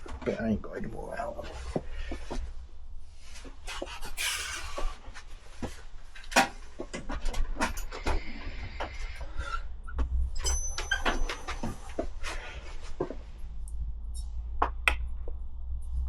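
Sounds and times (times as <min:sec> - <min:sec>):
high metallic rings: 0:10.4 - 0:11.6
metal spanners clinking: 0:10.4 - 0:11.8.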